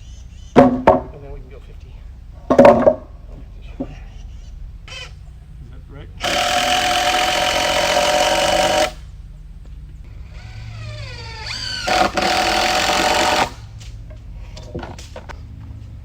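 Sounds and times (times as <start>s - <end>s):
power drill driving screws: 6.2s - 9.0s, 10.2s - 13.7s.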